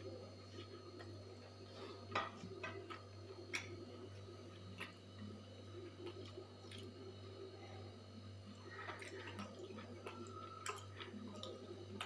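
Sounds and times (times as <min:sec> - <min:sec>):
chewing and food handling: 0:00.0 - 0:12.0
low electrical hum: 0:00.0 - 0:12.0.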